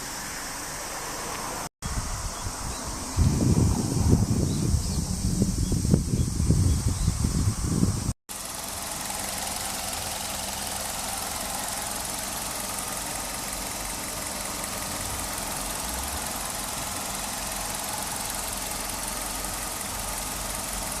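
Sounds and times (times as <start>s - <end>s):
car engine idling: 7.9s - 21.0s.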